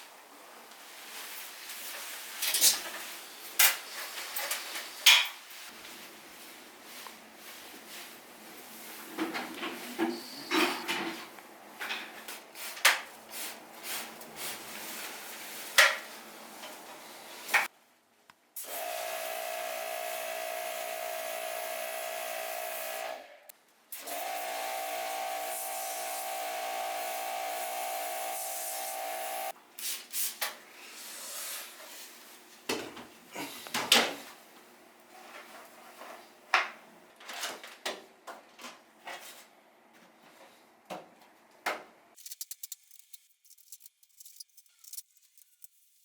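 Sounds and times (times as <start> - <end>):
cleaning machine hissing and whining: 18.7 - 23.3, 24.0 - 29.5.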